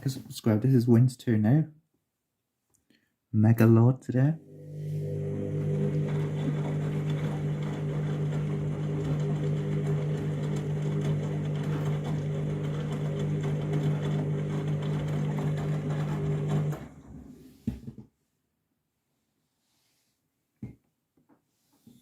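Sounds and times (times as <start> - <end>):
washing machine motor humming: 4.4 - 17.3.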